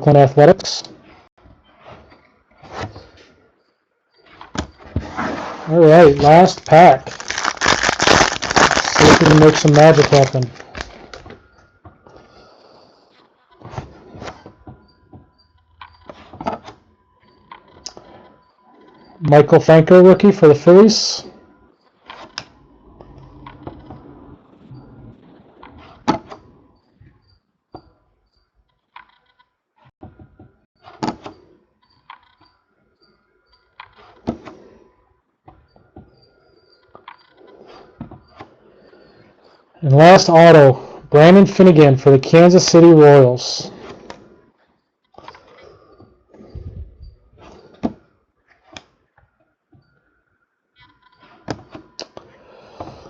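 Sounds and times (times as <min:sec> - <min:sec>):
cards slapping and clicking: 0:06.2 - 0:11.2.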